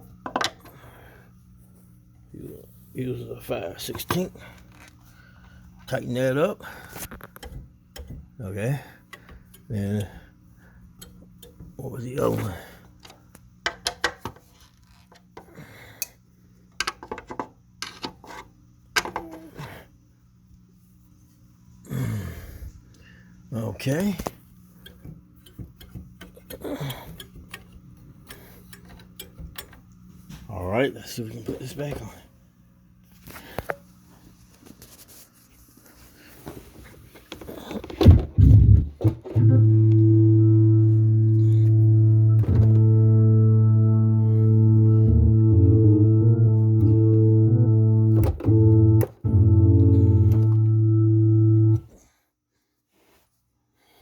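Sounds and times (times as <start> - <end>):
faint low hum: 0.0 - 52.4
organ bass pedal notes: 38.1 - 51.9.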